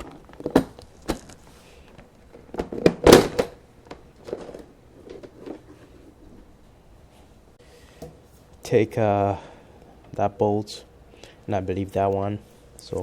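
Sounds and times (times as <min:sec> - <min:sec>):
plastic parts clicking and knocking: 0:00.0 - 0:05.9
plastic parts clattering: 0:00.0 - 0:06.5.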